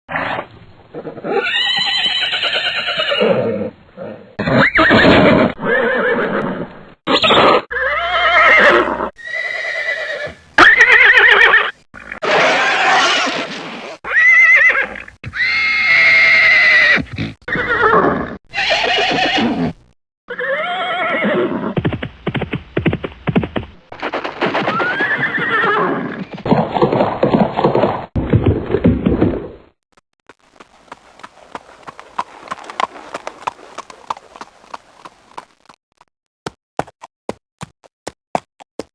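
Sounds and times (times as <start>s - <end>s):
horse whinnying: 0.1s - 21.8s, 24.6s - 26.3s.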